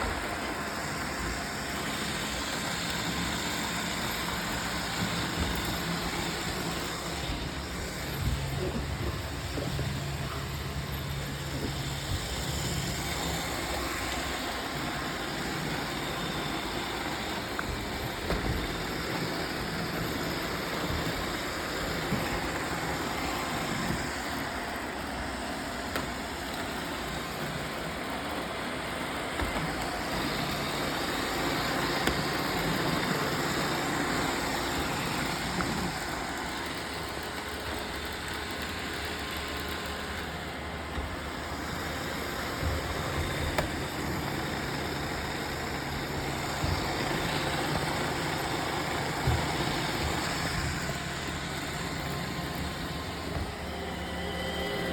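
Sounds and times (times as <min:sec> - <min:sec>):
robot vacuum motor and brush whirr: 0:00.0 - 0:54.9.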